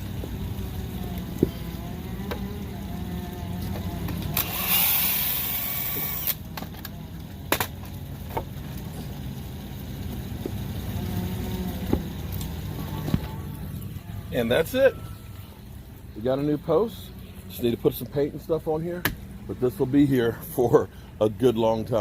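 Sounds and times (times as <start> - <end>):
low engine-like hum: 0.0 - 4.8, 5.4 - 22.0
loud hiss: 4.3 - 6.4.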